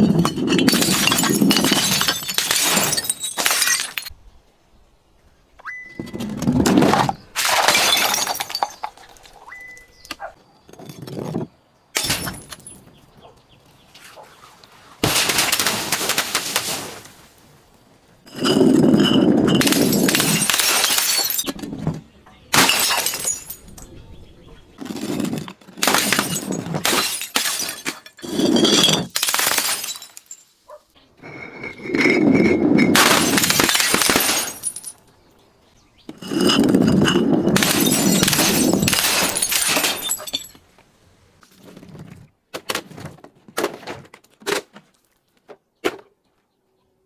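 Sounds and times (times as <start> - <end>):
glass bottles shattering: 0.0 - 4.1, 7.0 - 9.4, 12.0 - 12.9, 15.0 - 16.8, 18.3 - 21.7, 22.5 - 23.9, 24.8 - 30.6, 31.4 - 35.0, 36.2 - 40.6
glass shards clinking: 0.0 - 4.1, 7.4 - 9.3, 18.3 - 21.6, 22.6 - 23.9, 24.8 - 30.5, 31.4 - 35.0, 36.2 - 40.6
long grinding crunches of glass: 0.0 - 4.1, 18.3 - 21.6, 24.8 - 30.5, 31.5 - 35.0, 36.1 - 40.6.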